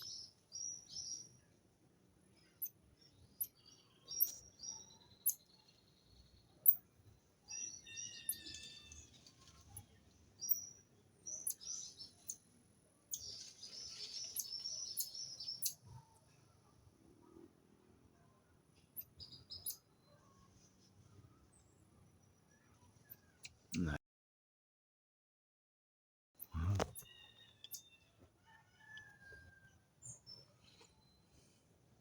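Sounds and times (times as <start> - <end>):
birds chirping: 7.5 - 16.0.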